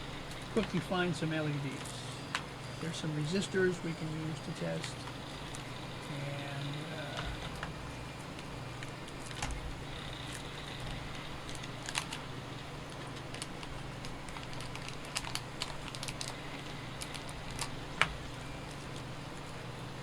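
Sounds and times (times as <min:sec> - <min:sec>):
steady low hum: 0:00.0 - 0:20.0
electronic parts rattling in plastic case: 0:13.0 - 0:19.1.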